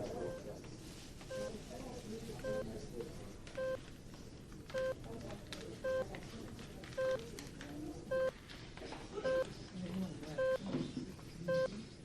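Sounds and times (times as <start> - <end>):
patient monitor beeping: 0.0 - 0.6, 1.3 - 1.6, 2.4 - 2.7, 3.5 - 3.9, 4.7 - 5.0, 5.8 - 6.1, 7.0 - 7.2, 8.1 - 8.3, 9.3 - 9.5, 10.4 - 10.6, 11.5 - 11.7
murmur of background voices: 0.0 - 12.0.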